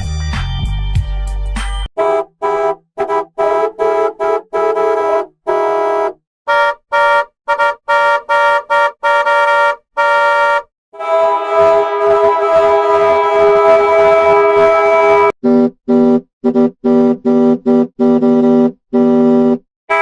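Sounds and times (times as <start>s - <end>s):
bass-heavy music: 0.0s - 1.9s, 11.0s - 18.1s
bus horn honking a tune: 2.0s - 20.0s.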